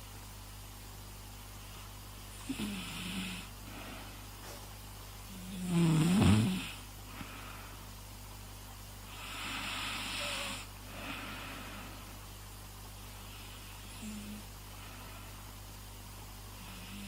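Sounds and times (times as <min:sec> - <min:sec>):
throaty rasping snore: 0:05.4 - 0:06.8.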